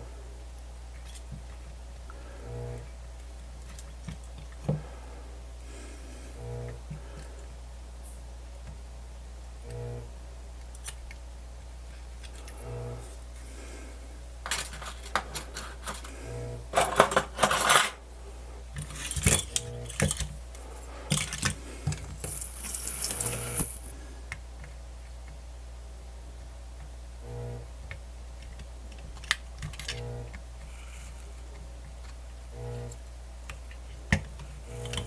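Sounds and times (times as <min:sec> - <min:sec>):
steady low hum: 0:00.0 - 0:35.0
metal tools clattering on workbench: 0:16.7 - 0:18.0, 0:18.8 - 0:20.3.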